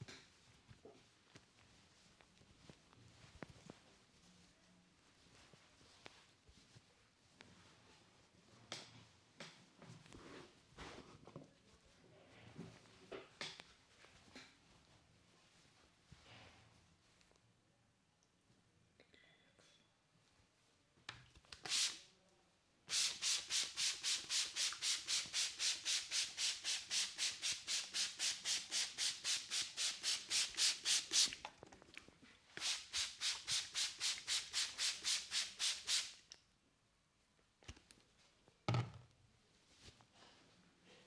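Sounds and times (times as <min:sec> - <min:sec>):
spray bottle misting water: 0:21.6 - 0:22.0, 0:22.9 - 0:31.5, 0:32.6 - 0:36.2.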